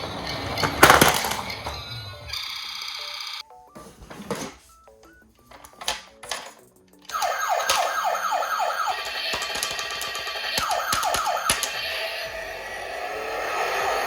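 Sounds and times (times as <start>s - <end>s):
toy electronic siren wailing: 1.4s - 3.4s, 7.1s - 12.9s
plinking melody: 7.1s - 9.2s
clicks: 7.1s - 11.9s.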